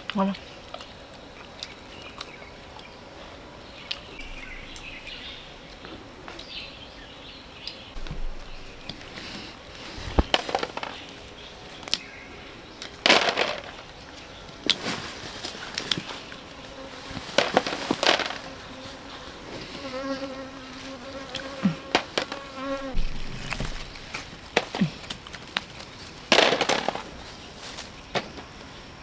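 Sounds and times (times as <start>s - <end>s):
sharp clicks and rustles: 8.0s - 12.0s, 12.8s - 19.8s
flying insect buzzing: 15.9s - 25.0s.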